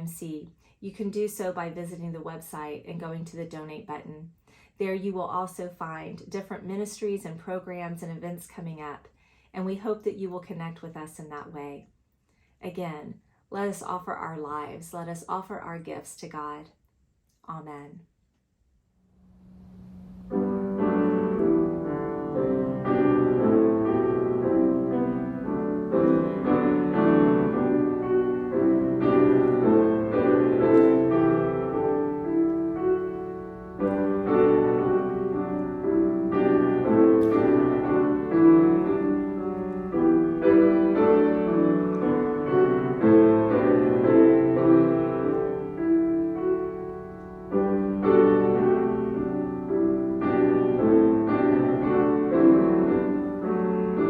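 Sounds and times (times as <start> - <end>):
slow solo piano piece: 19.6 - 54.0.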